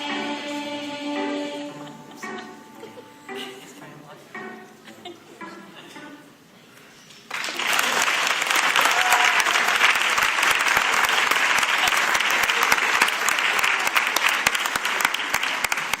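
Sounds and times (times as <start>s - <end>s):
audience clapping: 7.2s - 16.0s.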